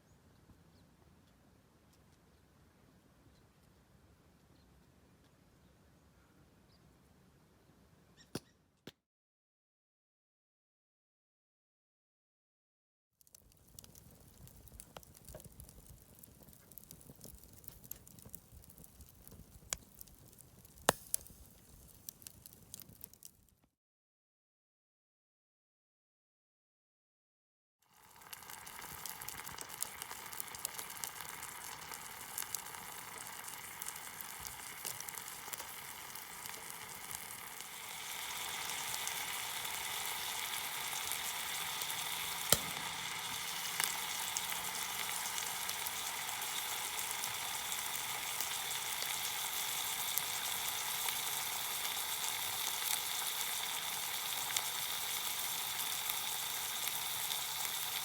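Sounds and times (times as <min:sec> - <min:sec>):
food sizzling in a pan: 0:27.9 - 0:58.0
sharp click: 0:42.5 - 0:42.9.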